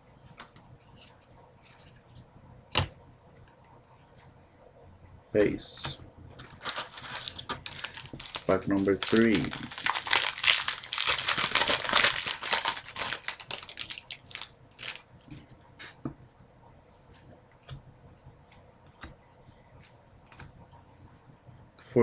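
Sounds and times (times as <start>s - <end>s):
cards clicking and rustling: 6.4s - 15.0s
foil wrapper crinkling and tearing: 6.5s - 15.1s.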